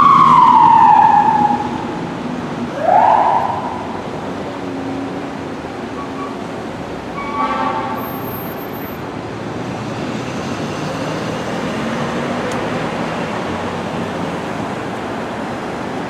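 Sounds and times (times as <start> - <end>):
engine and road rumble: 0.0 - 16.0
fire engine air horn: 7.2 - 8.5.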